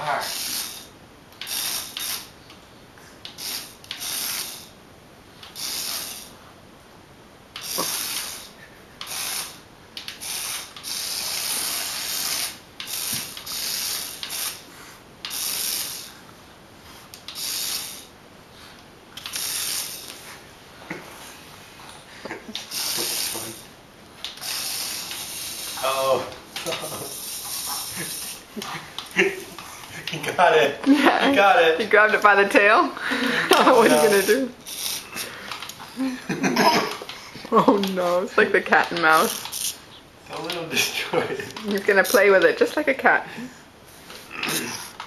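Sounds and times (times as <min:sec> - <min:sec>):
toy car motor whirring: 0:00.2 - 0:02.3, 0:03.3 - 0:04.7, 0:05.4 - 0:06.4, 0:07.6 - 0:14.7, 0:15.3 - 0:16.2, 0:17.2 - 0:18.1, 0:19.2 - 0:20.2, 0:22.6 - 0:23.7, 0:24.3 - 0:28.5, 0:33.5 - 0:35.8, 0:38.8 - 0:39.8.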